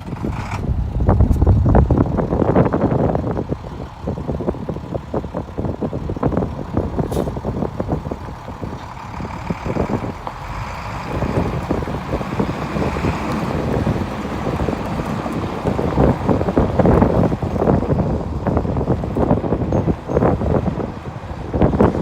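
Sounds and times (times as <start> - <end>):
rattles and knocks: 0.0 - 3.8
diesel truck engine running: 0.0 - 22.0.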